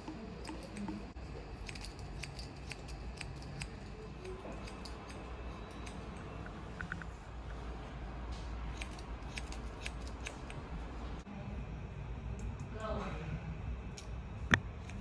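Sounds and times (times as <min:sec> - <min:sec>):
scissors snipping hair: 0:00.0 - 0:06.2, 0:08.7 - 0:10.6
low steady hum: 0:00.0 - 0:15.0.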